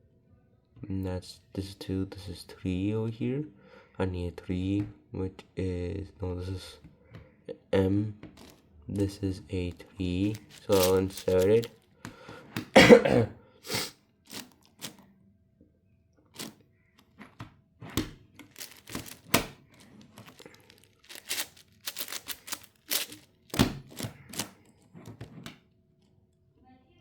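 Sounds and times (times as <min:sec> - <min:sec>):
puzzle cube plastic clicks: 0:10.2 - 0:11.8, 0:14.3 - 0:15.0, 0:18.0 - 0:24.6.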